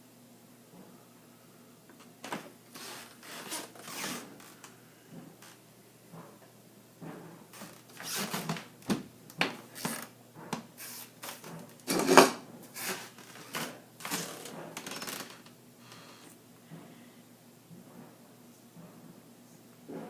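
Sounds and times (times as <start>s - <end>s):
scratching and rustling: 2.0s - 5.6s, 7.0s - 8.7s.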